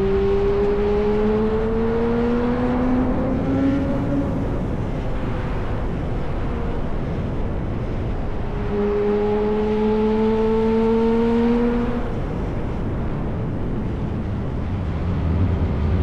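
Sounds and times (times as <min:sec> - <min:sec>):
sport bike engine revving: 0:08.7 - 0:12.4.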